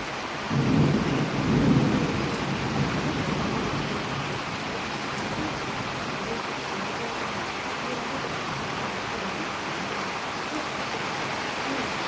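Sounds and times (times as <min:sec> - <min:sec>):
steady rain: 0:00.0 - 0:12.0
thunder rumbling: 0:00.5 - 0:06.3.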